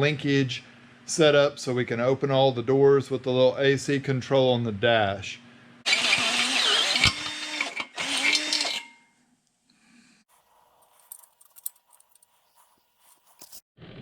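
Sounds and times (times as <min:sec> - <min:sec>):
electric drill boring through metal: 0:05.9 - 0:09.0
faint clicks and rattles: 0:10.8 - 0:13.6.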